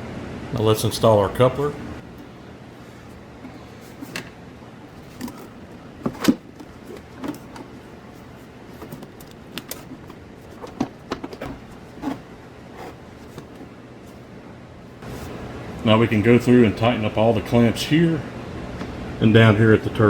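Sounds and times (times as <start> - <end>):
plastic parts knocking and clicking: 5.0 - 7.8, 8.8 - 13.7.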